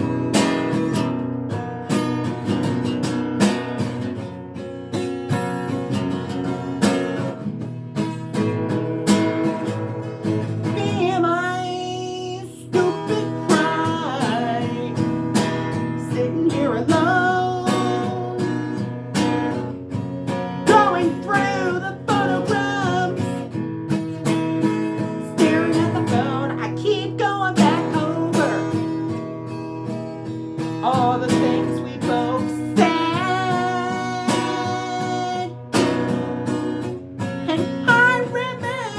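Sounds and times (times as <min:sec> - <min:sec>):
strummed acoustic guitar: 0:00.0 - 0:38.9
person singing: 0:10.6 - 0:18.8, 0:20.6 - 0:23.6, 0:25.2 - 0:29.2, 0:30.8 - 0:36.0, 0:37.4 - 0:38.9.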